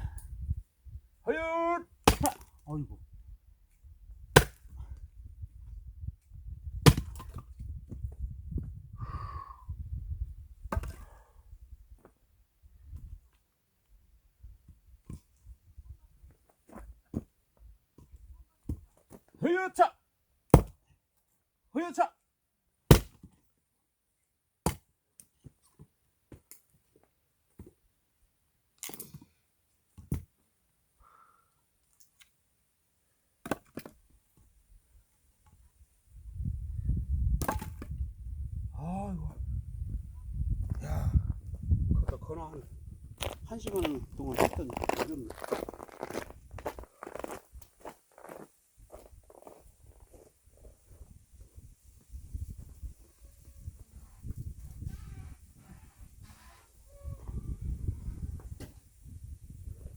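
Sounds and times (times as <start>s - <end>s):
wood splintering: 2.0s - 2.5s
axe striking firewood: 2.0s - 2.6s, 4.2s - 4.8s, 6.7s - 8.0s, 10.6s - 11.1s, 20.5s - 21.0s, 22.9s - 23.4s, 24.6s - 24.9s, 30.0s - 30.3s, 33.4s - 34.0s, 37.3s - 38.0s.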